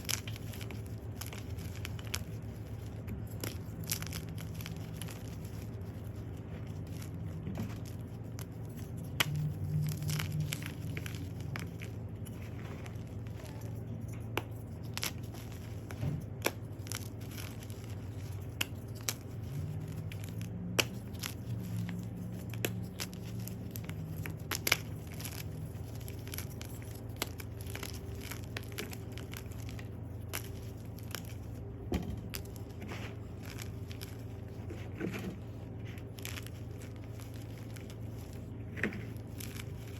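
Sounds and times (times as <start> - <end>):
chalk crunching and crackling: 0.0 - 39.9
steady low hum: 0.0 - 39.9.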